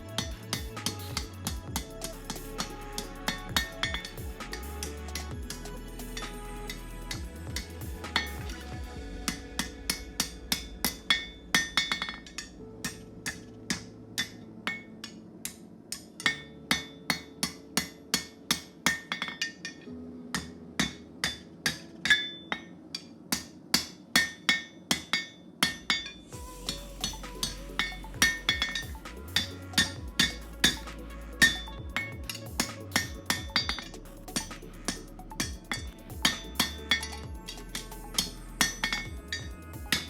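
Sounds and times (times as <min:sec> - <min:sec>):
hammer striking hot steel bar: 0:09.3 - 0:14.8, 0:15.9 - 0:19.8, 0:20.4 - 0:22.7, 0:23.3 - 0:28.8, 0:29.4 - 0:40.0.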